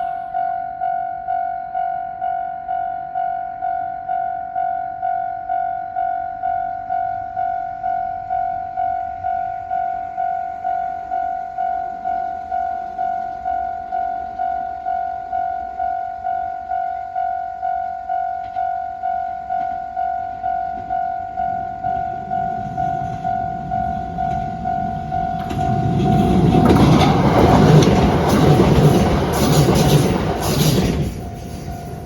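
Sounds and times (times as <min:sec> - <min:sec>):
level crossing warning bell ringing: 0:00.0 - 0:32.0
diesel train passing: 0:06.4 - 0:32.0.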